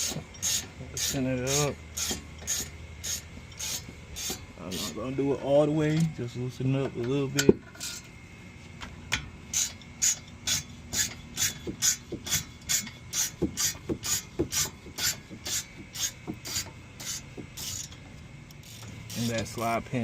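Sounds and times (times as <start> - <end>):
hand ratchet clicking: 0.0 - 4.9, 9.5 - 19.8.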